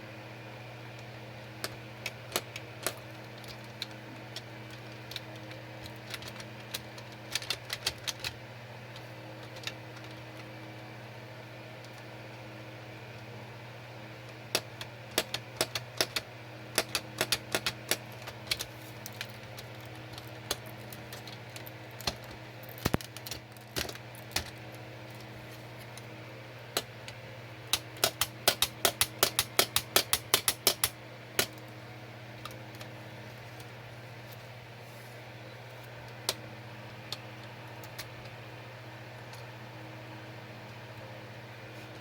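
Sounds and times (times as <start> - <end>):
plastic mechanism clicking: 26.8 - 31.6.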